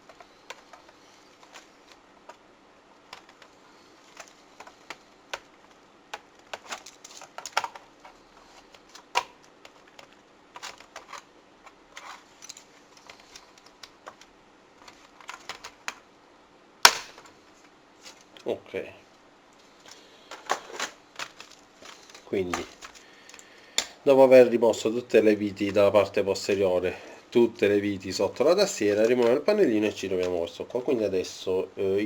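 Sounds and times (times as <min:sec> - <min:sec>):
plastic parts clicking and rattling: 0:00.0 - 0:02.4, 0:03.0 - 0:16.1, 0:16.8 - 0:18.5, 0:19.7 - 0:24.0, 0:27.4 - 0:30.6
faint steady hum: 0:00.0 - 0:32.0
plastic snapping: 0:04.1 - 0:07.9, 0:08.6 - 0:16.0, 0:16.8 - 0:17.4, 0:19.8 - 0:24.0.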